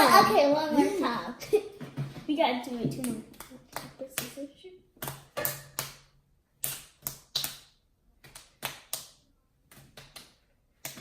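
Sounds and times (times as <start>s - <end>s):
sharp taps and clicks: 5.0s - 11.0s.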